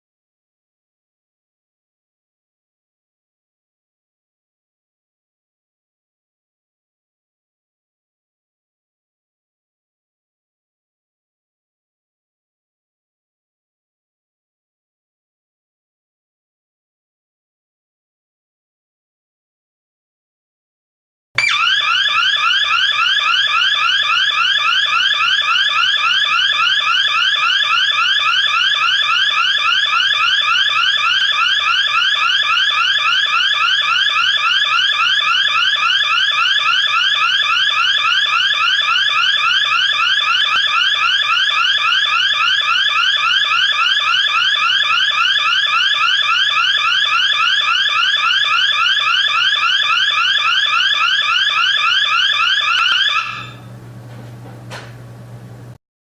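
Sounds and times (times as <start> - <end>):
security alarm siren: 21.4 - 53.8
steady low hum: 53.6 - 55.8.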